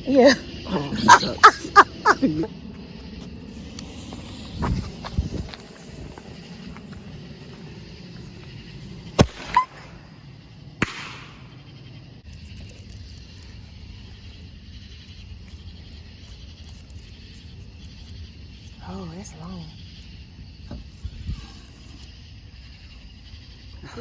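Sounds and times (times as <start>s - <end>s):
fireworks cracks and bangs: 2.9s - 12.0s
firework whistle: 3.1s - 10.2s, 10.8s - 11.8s.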